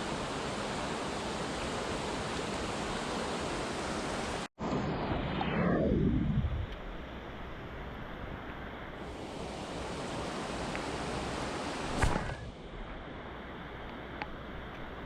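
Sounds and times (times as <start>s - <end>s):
river water rushing: 0.0s - 4.5s, 9.0s - 12.2s.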